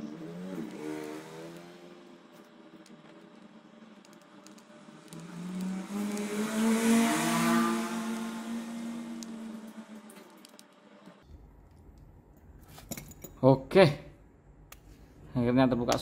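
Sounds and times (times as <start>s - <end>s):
vehicle engine passing by: 0.0s - 3.9s, 4.5s - 11.2s.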